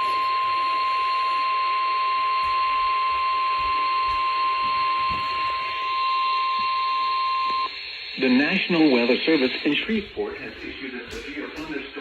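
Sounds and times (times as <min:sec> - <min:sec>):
steady high alarm tone: 0:00.0 - 0:12.0
radio hiss: 0:03.2 - 0:12.0.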